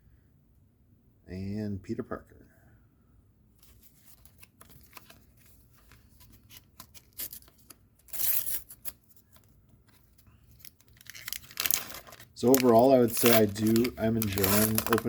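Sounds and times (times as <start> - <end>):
paper stickers rustling: 3.6 - 15.0.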